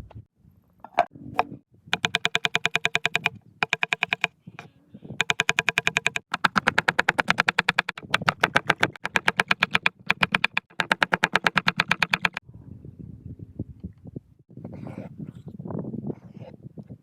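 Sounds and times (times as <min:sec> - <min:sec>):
rapid utensil tapping: 0:05.2 - 0:12.4.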